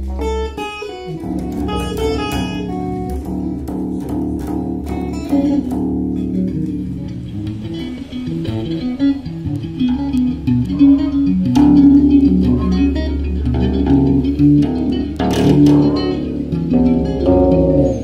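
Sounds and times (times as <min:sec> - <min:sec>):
bass guitar picked notes: 0:00.0 - 0:18.0
low held bass tone: 0:00.0 - 0:18.0
strummed bass stroke: 0:00.0 - 0:18.0.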